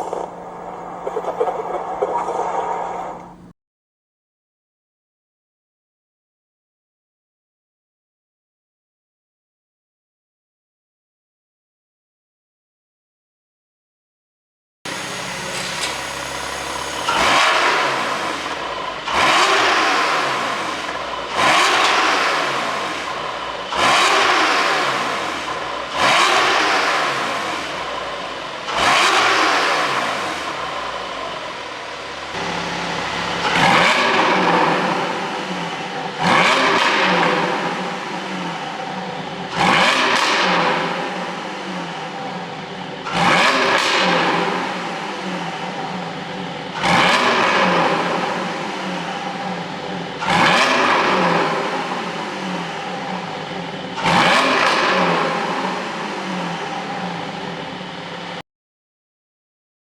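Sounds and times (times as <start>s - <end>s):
car engine revving: 0.0s - 3.5s, 14.9s - 58.4s.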